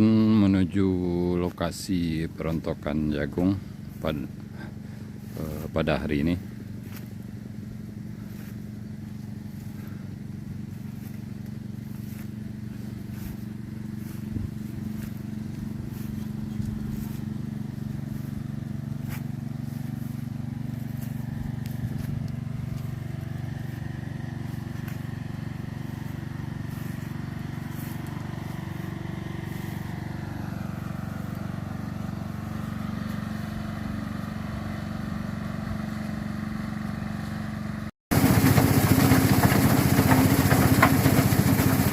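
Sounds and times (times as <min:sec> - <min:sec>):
vehicle engine humming: 0:00.0 - 0:41.9.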